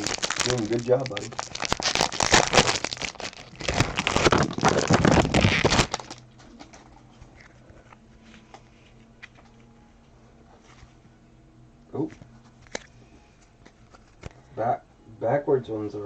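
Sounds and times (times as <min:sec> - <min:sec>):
wrapper tearing and crinkling: 0:00.0 - 0:06.2.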